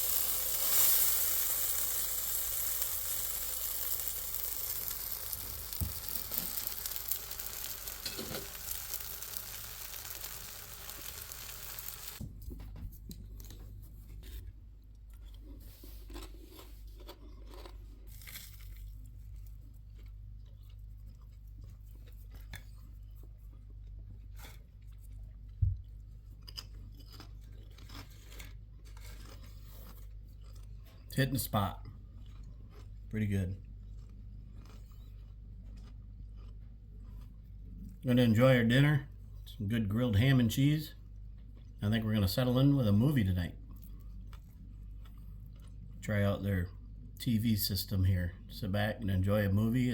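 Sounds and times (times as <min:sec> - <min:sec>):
food sizzling in a frying pan: 0:00.0 - 0:12.2
eating crunches and clicks: 0:00.1 - 0:12.2, 0:15.0 - 0:38.1, 0:43.6 - 0:46.0.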